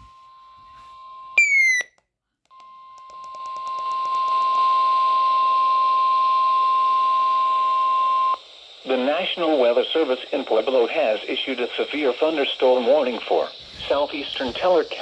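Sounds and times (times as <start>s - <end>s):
steady piercing alarm tone: 0.6s - 1.9s
loud falling chirp: 1.4s - 1.9s
radio static: 8.7s - 15.0s.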